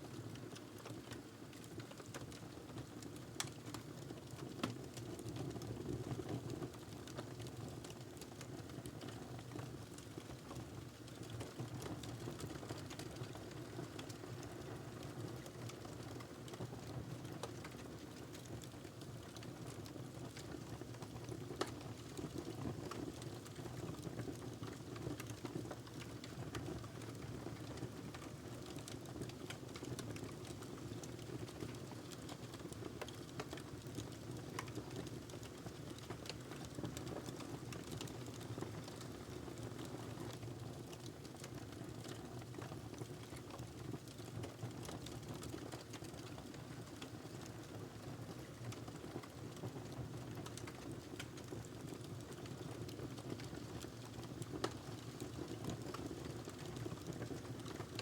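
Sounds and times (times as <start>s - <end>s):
wood fire crackling: 15.4s - 58.0s.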